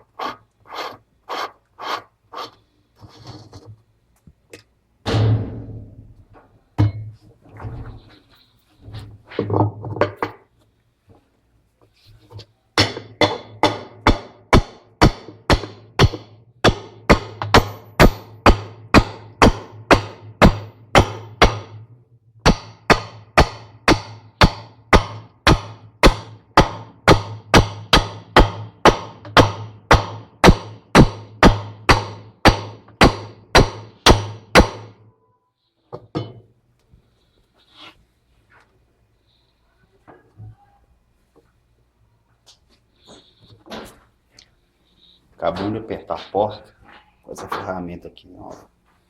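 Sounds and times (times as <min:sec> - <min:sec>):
hammer striking metal tool: 0:12.8 - 0:35.0.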